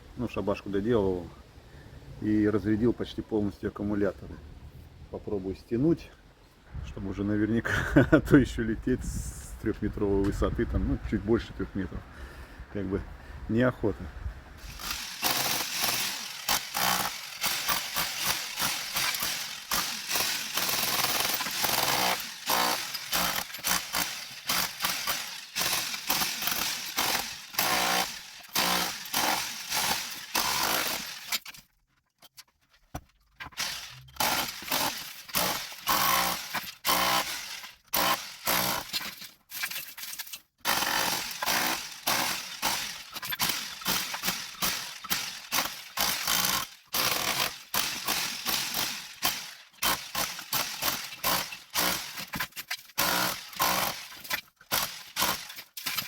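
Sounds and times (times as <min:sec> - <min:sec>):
power tool hammering masonry: 0:14.6 - 0:31.5, 0:33.6 - 0:39.2, 0:40.6 - 0:56.0.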